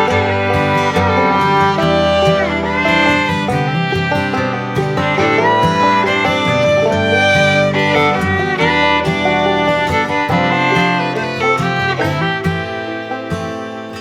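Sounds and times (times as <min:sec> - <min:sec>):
instrumental background music: 0:00.0 - 0:14.0.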